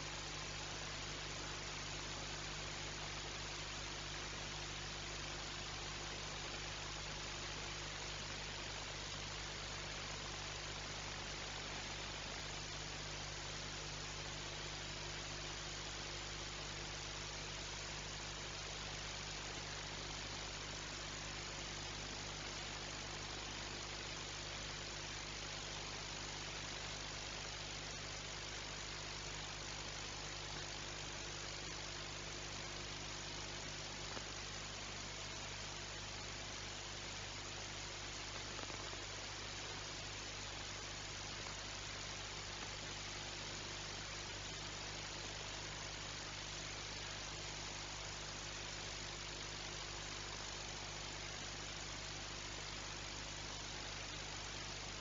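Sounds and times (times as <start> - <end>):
constant low hum: 0.0 - 55.0
steady hiss: 0.0 - 55.0.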